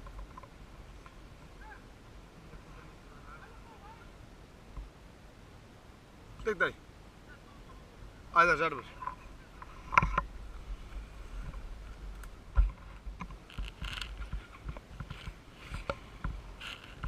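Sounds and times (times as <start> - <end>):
camera knocking and scraping: 9.0 - 10.3, 12.5 - 17.0.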